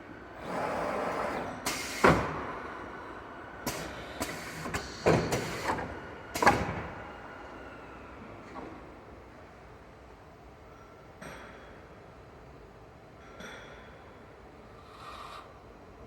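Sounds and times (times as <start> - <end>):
mechanical clunks and clacks: 3.7 - 7.0.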